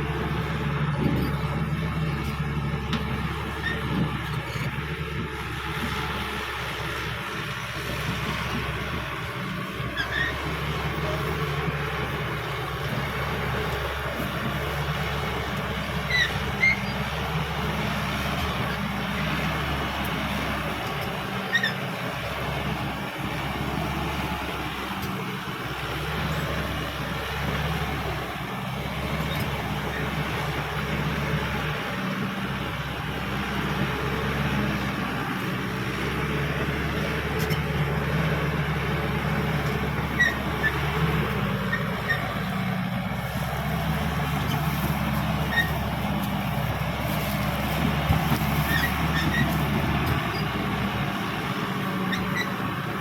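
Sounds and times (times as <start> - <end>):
bulldozer diesel engine running: 0.0 - 53.0
short high squeaks: 10.0 - 10.4, 16.1 - 17.0, 21.5 - 21.8, 40.2 - 40.8, 45.5 - 45.8, 48.3 - 49.7, 52.1 - 52.6.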